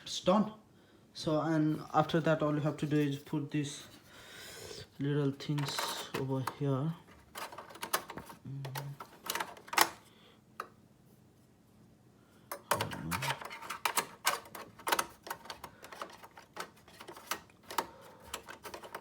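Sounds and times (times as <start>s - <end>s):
plastic parts clicking into place: 5.4s - 10.8s, 12.5s - 19.0s.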